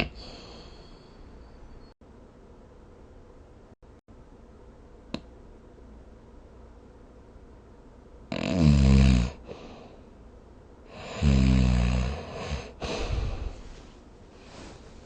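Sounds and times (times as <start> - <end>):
noisy breath out: 0.0 - 1.4, 12.3 - 14.8
person snoring: 8.3 - 9.9, 10.9 - 13.6.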